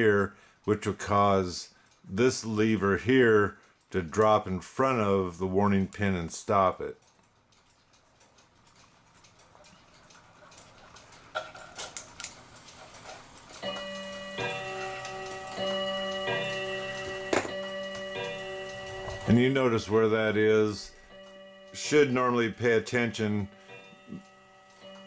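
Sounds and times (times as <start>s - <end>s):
clock movement ticking: 0.0s - 25.0s
held tones: 13.6s - 25.0s.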